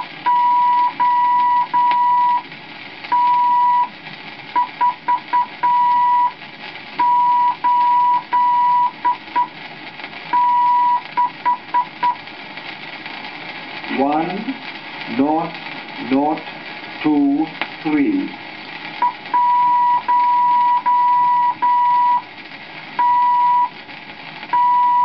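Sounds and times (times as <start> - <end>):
morse code beeping tone: 0.0 - 2.4, 3.2 - 3.9, 4.6 - 6.3, 7.0 - 9.5, 10.4 - 12.2, 19.0 - 22.2, 23.0 - 23.7, 24.6 - 25.0
faint record surface hiss: 0.0 - 25.0.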